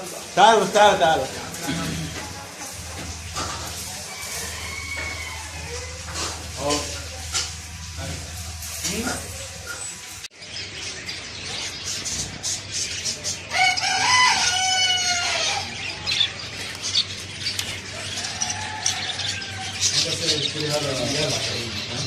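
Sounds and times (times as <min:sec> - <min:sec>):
rooster crowing: 0:01.7 - 0:09.6, 0:13.5 - 0:16.0, 0:17.9 - 0:20.3.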